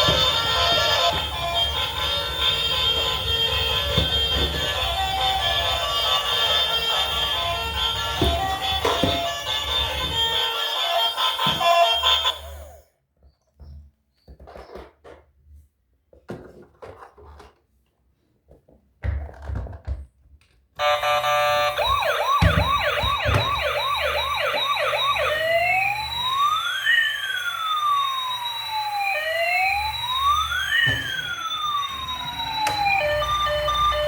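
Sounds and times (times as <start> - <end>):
toy electronic siren: 0.0 - 12.8, 20.8 - 34.0.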